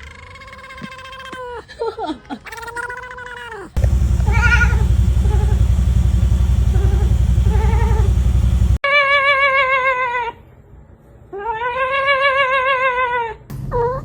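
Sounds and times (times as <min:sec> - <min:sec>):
cat low pulsing rumble: 0:03.8 - 0:08.8
cat yowling: 0:04.1 - 0:05.6
cat meowing: 0:04.2 - 0:04.9.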